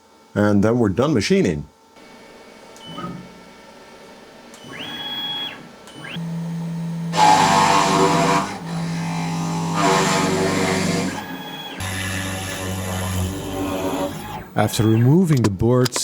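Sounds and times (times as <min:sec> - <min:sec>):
power drill whirring: 0:04.5 - 0:14.9
router spindle drilling wood: 0:04.6 - 0:14.9.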